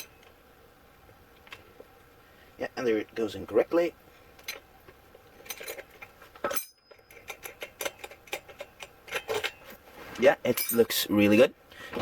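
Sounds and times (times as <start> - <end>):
metal tools clinking: 5.3 - 9.8, 10.4 - 11.1.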